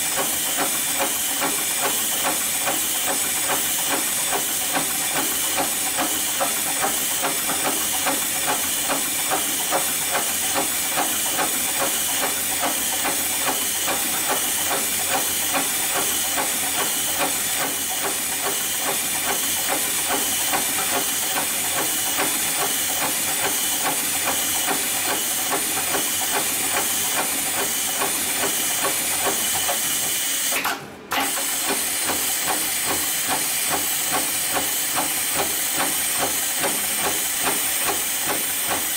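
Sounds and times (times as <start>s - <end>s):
sewing machine stitching: 26.0s - 38.9s.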